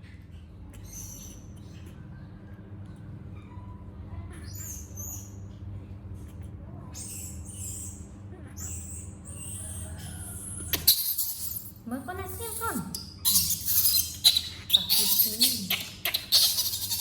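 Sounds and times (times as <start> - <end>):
baby monkey squeaking: 0.8 - 1.9, 4.3 - 5.5, 6.9 - 17.0.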